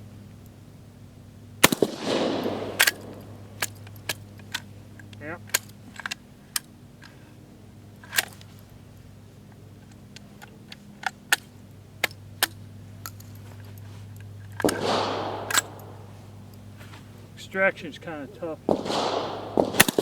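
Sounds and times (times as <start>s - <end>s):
shotgun action metallic clicks: 1.6s - 7.2s, 7.9s - 16.8s, 18.7s - 20.0s.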